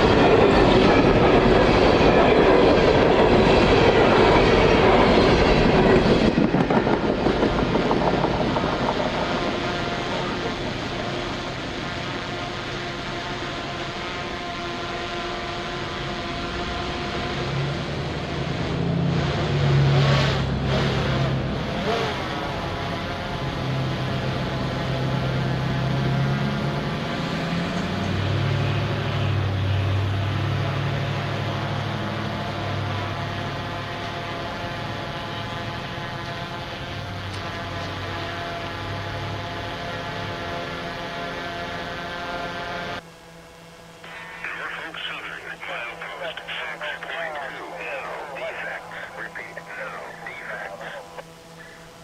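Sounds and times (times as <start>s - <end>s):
freight train rumbling: 0.0s - 12.3s
engine humming: 0.0s - 15.0s.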